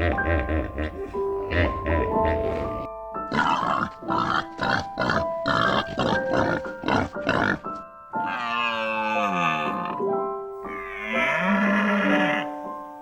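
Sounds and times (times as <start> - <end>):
pig grunting: 0.0 - 10.1
background music: 0.0 - 13.0.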